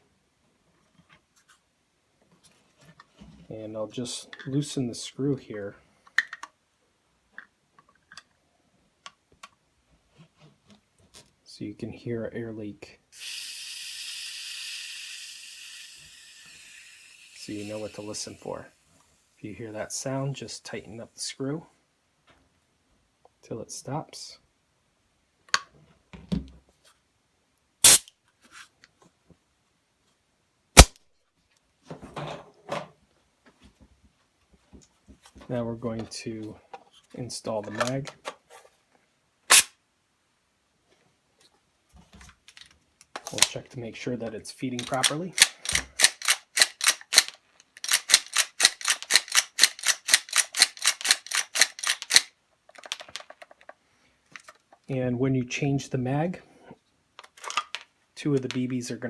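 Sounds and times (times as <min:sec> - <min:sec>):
airsoft pistol shots: 0:27.8 - 0:28.0, 0:39.5 - 0:39.7
airsoft pistol cracks: 0:27.8 - 0:28.1, 0:30.8 - 0:31.0, 0:39.5 - 0:39.7, 0:45.4 - 0:52.3.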